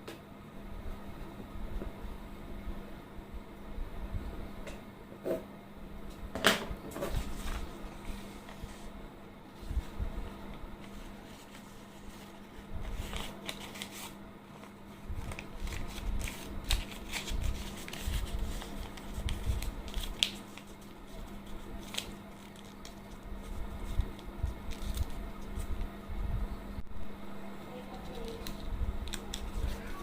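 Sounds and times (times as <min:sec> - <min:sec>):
faint steady hum: 0:00.0 - 0:30.0
rubbery handling noise: 0:10.8 - 0:25.8.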